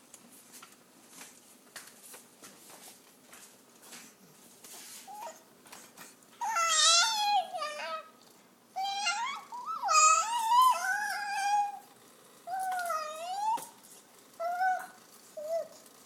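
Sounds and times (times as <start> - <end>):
baby singing: 6.4 - 8.2, 8.8 - 11.9, 12.5 - 13.8, 14.4 - 15.8.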